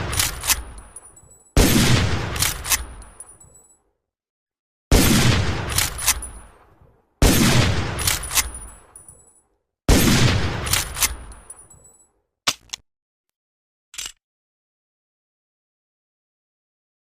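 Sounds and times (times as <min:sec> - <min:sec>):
rifle shots echoing: 0:01.6 - 0:03.0, 0:04.9 - 0:06.6, 0:07.2 - 0:08.9, 0:09.9 - 0:11.3
rifle lever clicks: 0:02.4 - 0:03.4, 0:05.7 - 0:06.3, 0:08.0 - 0:08.7, 0:10.7 - 0:11.9, 0:14.0 - 0:14.2.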